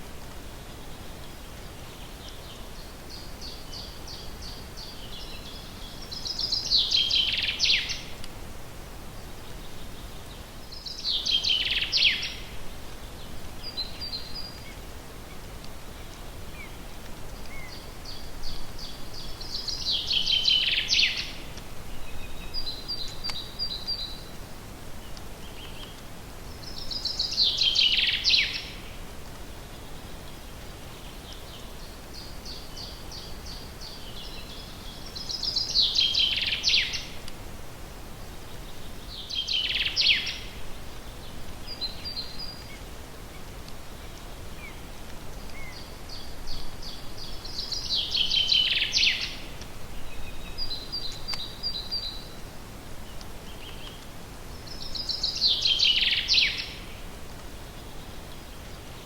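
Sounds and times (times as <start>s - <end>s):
steady background hiss: 0.0s - 59.0s
songbird trilling song: 1.9s - 8.2s, 9.7s - 12.6s, 17.4s - 24.3s, 25.4s - 28.9s, 31.0s - 37.2s, 38.6s - 40.6s, 43.9s - 52.4s, 53.0s - 57.0s.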